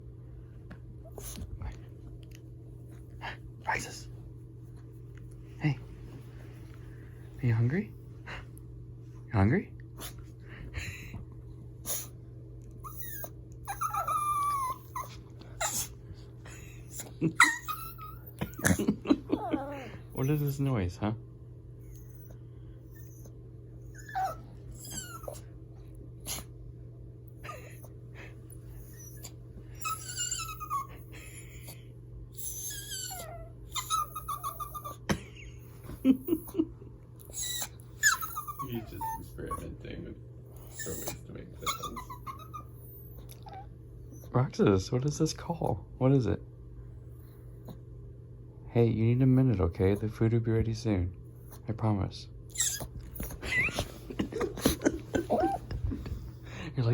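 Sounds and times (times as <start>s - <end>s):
dog whining and whimpering: 12.7s - 20.5s, 21.9s - 25.6s, 26.2s - 26.5s, 27.3s - 28.0s, 28.6s - 39.7s, 40.6s - 44.4s, 52.5s - 56.4s
dog breathy puffs: 14.0s - 17.2s.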